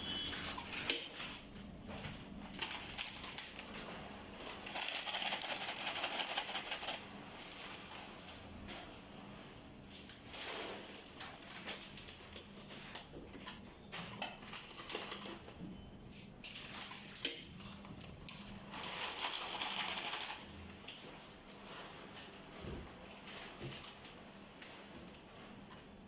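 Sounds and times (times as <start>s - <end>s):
plastic bags rustling: 16.5s - 22.3s.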